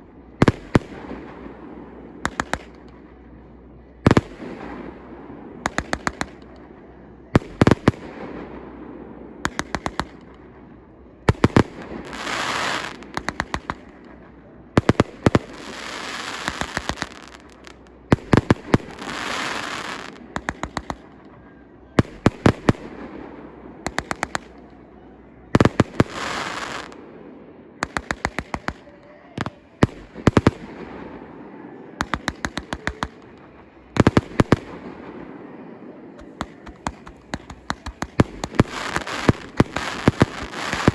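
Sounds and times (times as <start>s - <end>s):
firework bangs: 0.0s - 40.9s
firework hissing crackle: 11.3s - 13.9s, 14.8s - 21.1s, 25.6s - 27.0s, 36.2s - 40.9s.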